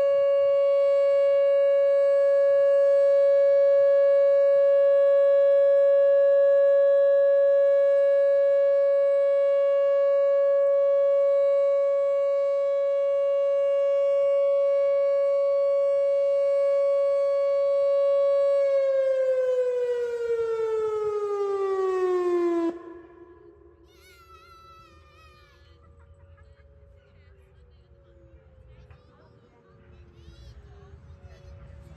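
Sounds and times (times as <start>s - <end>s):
outdoor warning siren steady tone: 0.0s - 25.5s.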